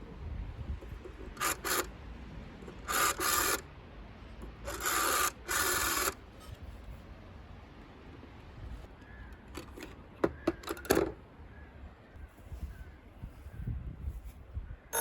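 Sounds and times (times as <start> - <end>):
telephone ringing: 2.8 - 3.6, 4.6 - 6.2.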